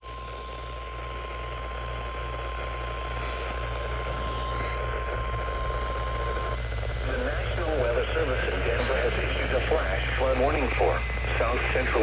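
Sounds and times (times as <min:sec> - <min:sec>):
steady high alarm tone: 0:00.0 - 0:12.0
low hum: 0:00.1 - 0:12.0
radio hiss: 0:03.9 - 0:12.0.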